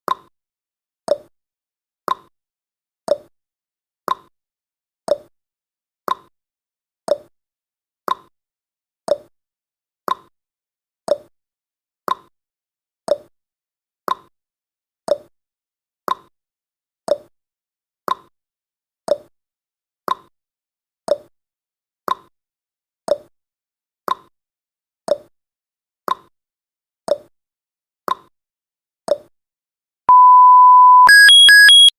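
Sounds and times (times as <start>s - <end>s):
steady electronic beep: 30.1s - 31.9s
timer ticking: 30.1s - 31.9s.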